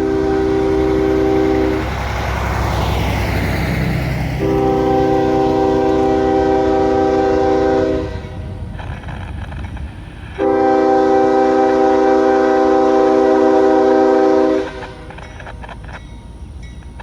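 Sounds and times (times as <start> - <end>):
locomotive air horn: 0.0 - 2.0, 4.3 - 8.6, 10.4 - 15.2
locomotive engine rumble: 0.0 - 17.0.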